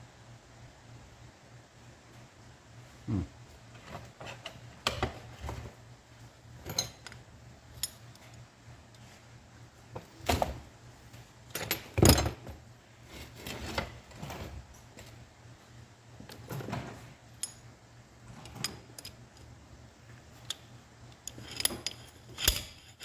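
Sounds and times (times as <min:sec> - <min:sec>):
metal parts clinking and knocking: 0:20.4 - 0:23.0.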